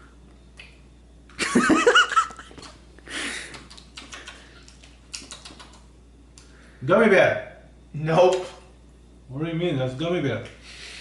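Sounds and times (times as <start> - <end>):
person giggling: 1.4 - 3.6.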